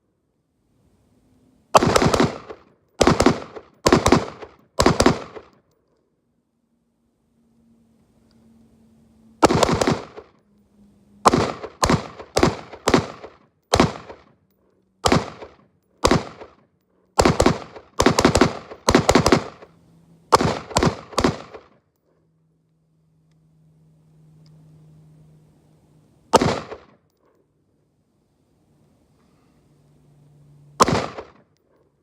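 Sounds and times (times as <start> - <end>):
rifle gunshots: 1.8 - 5.5, 9.4 - 10.3, 11.2 - 14.3, 15.0 - 16.6, 17.2 - 19.7, 20.3 - 21.7, 26.3 - 26.9, 30.8 - 31.4.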